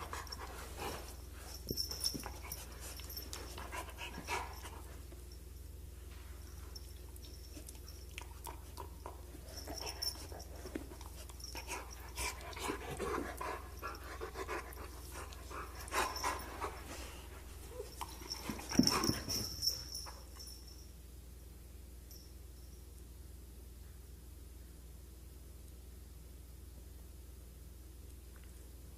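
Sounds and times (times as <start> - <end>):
puppies panting and whimpering: 0.0 - 5.0, 8.5 - 20.1
light scratching and shuffling: 0.0 - 5.2.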